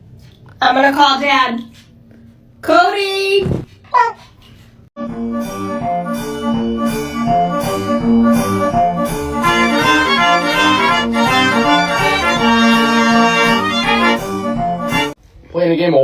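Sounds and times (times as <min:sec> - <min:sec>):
upbeat instrumental music: 0:05.0 - 0:15.2.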